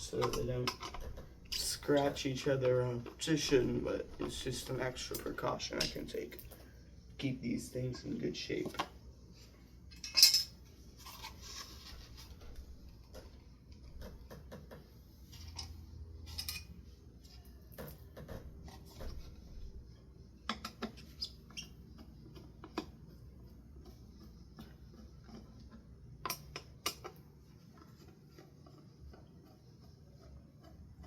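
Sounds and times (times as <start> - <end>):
hard parts clinking and tapping: 0.0 - 6.6, 9.9 - 10.6, 13.0 - 16.8.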